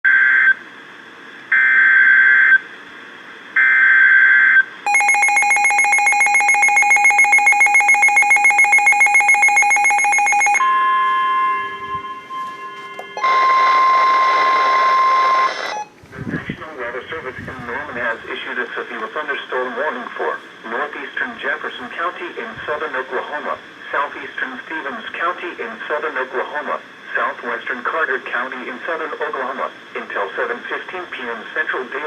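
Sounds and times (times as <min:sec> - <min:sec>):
steady single-pitch warning tone: 0:03.6 - 0:16.0
harsh pulsing attention tone: 0:04.9 - 0:15.9.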